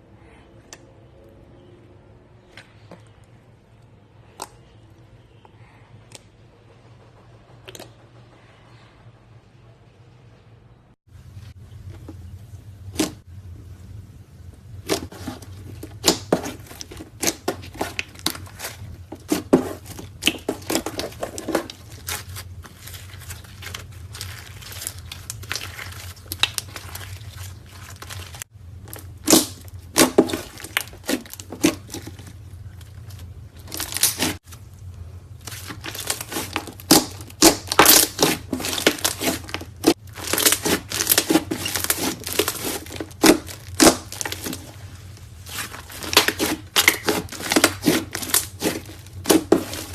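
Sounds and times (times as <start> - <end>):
slime crackling and popping: 14.8 - 34.8, 35.4 - 49.9.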